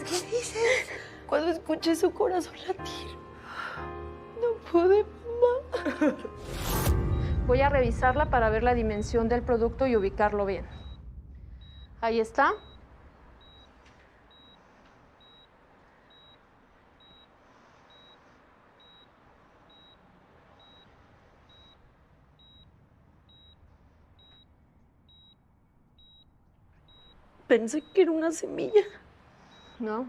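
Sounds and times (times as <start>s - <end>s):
medical monitor beeps: 7.0s - 8.4s, 10.6s - 11.0s, 11.6s - 14.6s, 15.2s - 30.0s.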